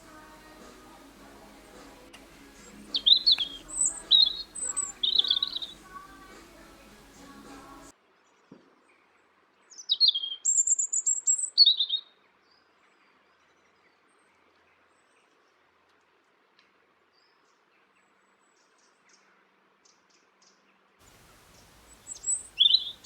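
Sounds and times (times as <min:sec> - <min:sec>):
songbird singing: 0:00.0 - 0:07.9, 0:09.7 - 0:15.4, 0:18.6 - 0:23.0.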